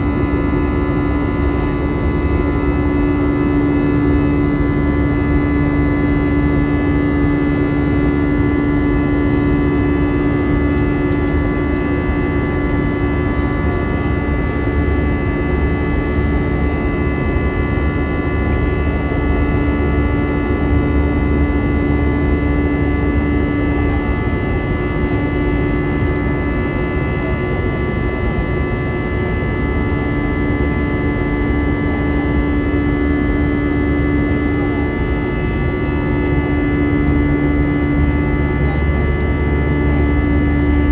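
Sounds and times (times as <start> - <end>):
jet engine cabin drone: 0.0 - 40.9.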